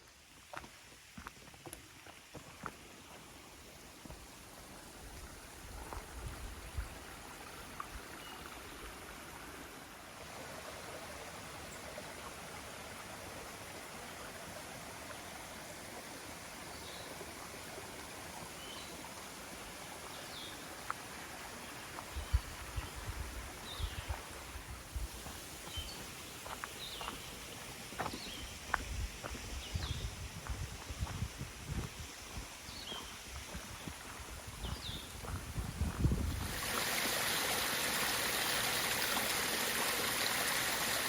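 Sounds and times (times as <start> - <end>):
flowing stream rushing: 2.6 - 22.1, 36.2 - 41.0.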